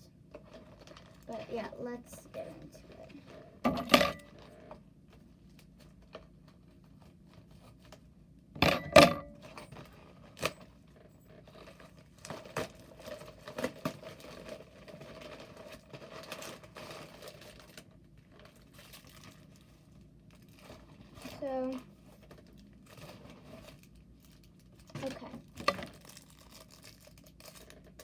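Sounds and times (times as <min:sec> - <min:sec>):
packaging crinkling and tearing: 0:00.4 - 0:01.9, 0:09.8 - 0:28.0.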